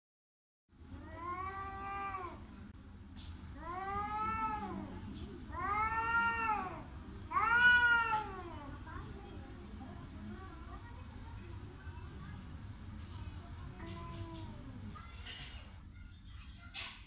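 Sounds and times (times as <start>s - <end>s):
cat yowling: 5.5s - 8.7s.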